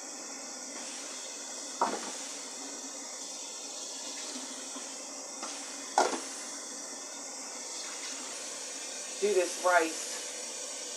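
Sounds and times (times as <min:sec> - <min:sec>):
tap running into sink: 0:01.8 - 0:02.2, 0:04.0 - 0:06.3.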